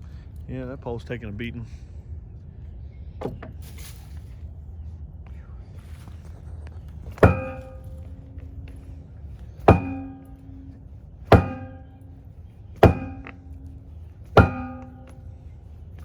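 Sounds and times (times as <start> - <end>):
hammer blows with metallic ring: 7.1 - 16.0.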